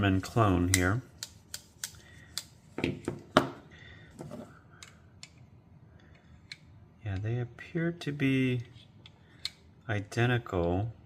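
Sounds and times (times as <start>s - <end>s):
multitool parts clicking: 0.6s - 2.6s.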